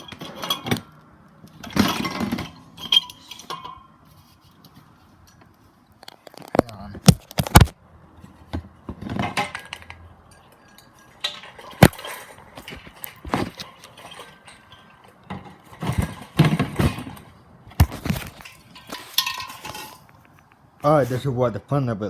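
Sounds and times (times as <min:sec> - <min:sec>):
metal fan housing rattling: 0:01.5 - 0:04.0, 0:09.0 - 0:20.3.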